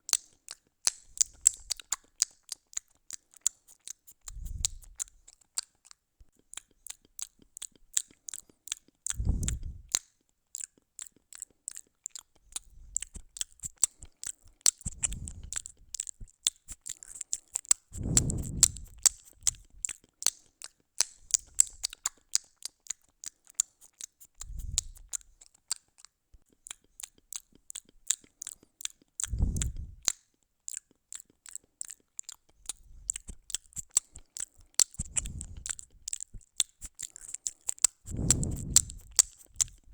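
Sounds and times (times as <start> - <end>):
dull low thumps: 9.2 - 9.9, 14.9 - 15.6, 18.0 - 19.8, 29.3 - 30.0, 35.0 - 36.0, 38.1 - 39.9.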